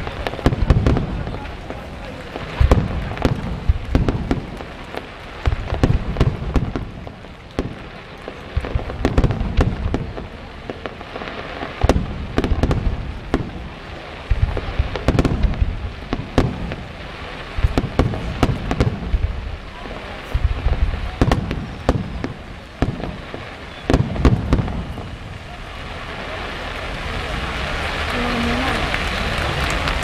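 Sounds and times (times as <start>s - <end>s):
firework bangs: 0.0s - 30.0s
firework crackling: 0.0s - 30.0s.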